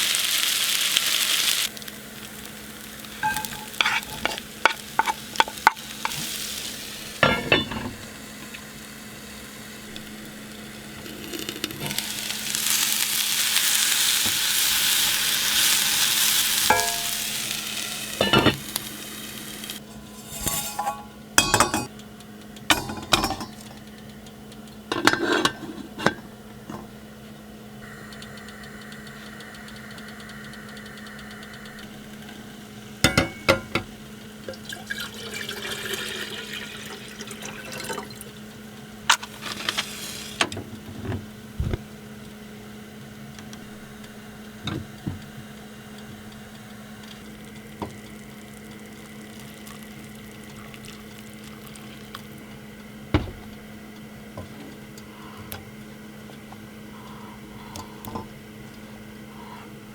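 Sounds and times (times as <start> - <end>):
steady low hum: 1.8 - 34.7, 38.2 - 59.9
pots and utensils clinking: 3.1 - 8.7, 11.2 - 22.0, 22.7 - 23.9, 24.9 - 26.9, 33.0 - 38.4, 39.1 - 41.8.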